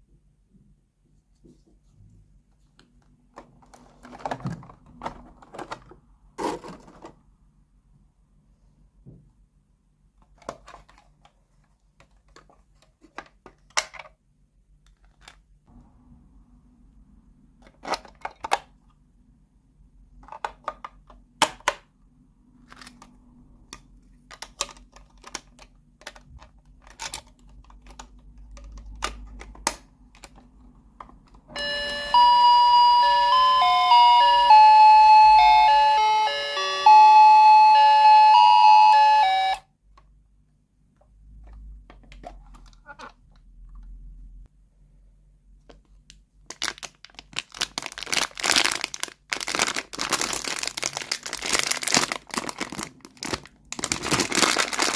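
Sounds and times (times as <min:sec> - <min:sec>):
plastic toy pieces clicking: 0:23.7 - 0:30.5
electronic beeping toy melody: 0:31.6 - 0:39.6.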